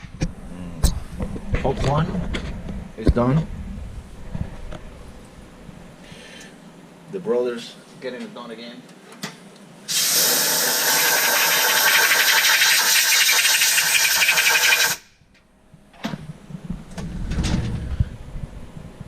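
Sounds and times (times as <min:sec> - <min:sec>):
strong hiss: 0:09.9 - 0:15.0
tool carousel mechanical run: 0:09.9 - 0:15.0.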